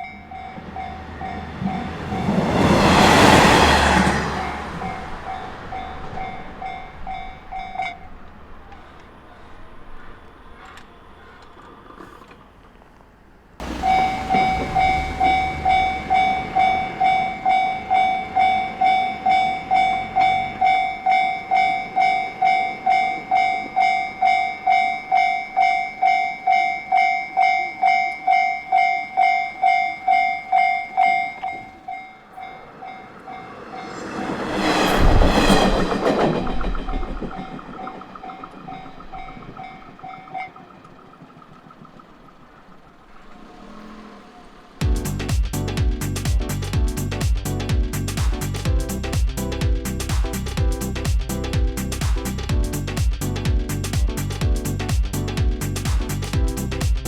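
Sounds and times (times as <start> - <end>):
level crossing bell ringing: 0.0 - 2.4, 13.6 - 33.6
train passing: 0.0 - 57.0.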